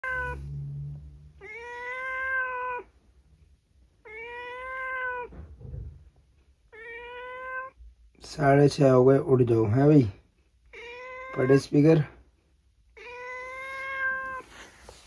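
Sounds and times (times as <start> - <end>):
cat meowing: 0.0 - 2.9, 4.0 - 5.4, 6.7 - 7.9, 10.7 - 11.8, 12.9 - 14.7.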